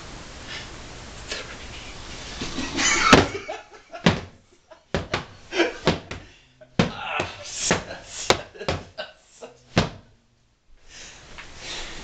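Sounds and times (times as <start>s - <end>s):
thumps and knocks: 3.0s - 9.0s, 9.7s - 10.2s.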